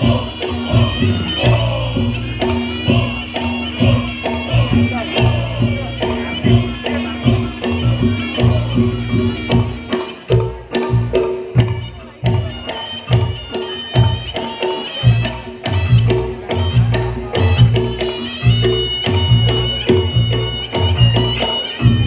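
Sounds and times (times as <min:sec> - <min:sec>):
shrill reed melody: 0:00.0 - 0:10.7
drum strokes: 0:00.0 - 0:22.0.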